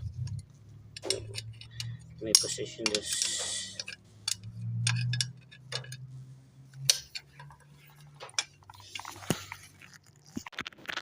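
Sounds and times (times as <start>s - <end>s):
metal tools clinking on brake hardware: 0.9s - 6.1s.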